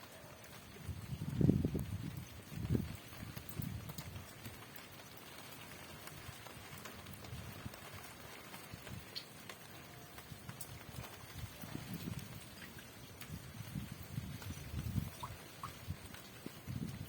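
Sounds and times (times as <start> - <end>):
rain falling: 0.0 - 17.0
wind gust on microphone: 0.7 - 4.6, 10.3 - 17.0.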